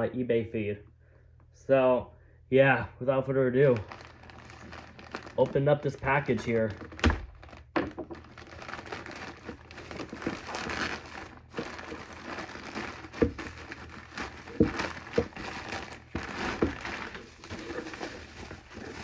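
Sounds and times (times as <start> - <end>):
packing material crinkling: 3.6 - 19.0
package handling knocks: 6.4 - 17.9.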